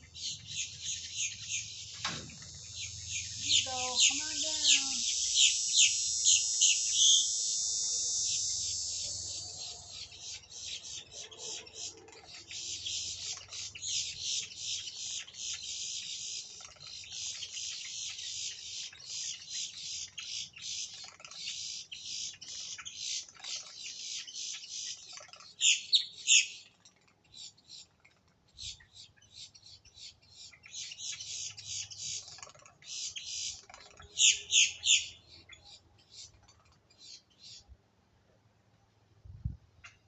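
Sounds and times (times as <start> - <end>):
flock of grackles calling: 0.0 - 23.6.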